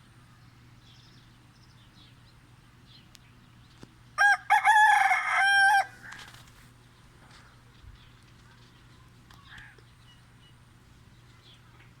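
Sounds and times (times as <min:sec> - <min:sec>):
rooster crowing: 0:04.2 - 0:06.3.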